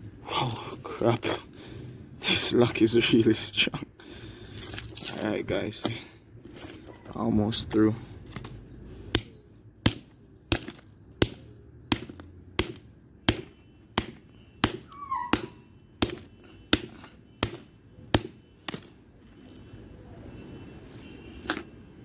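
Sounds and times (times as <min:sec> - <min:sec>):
hammer striking padlock: 0:09.1 - 0:19.0.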